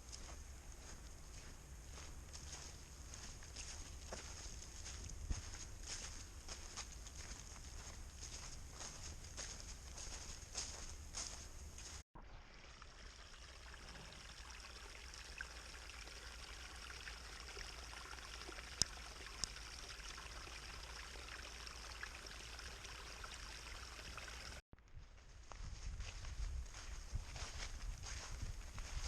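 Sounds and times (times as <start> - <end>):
footsteps on trail: 0.0 - 12.0, 24.9 - 29.0
small stream running: 0.0 - 24.6.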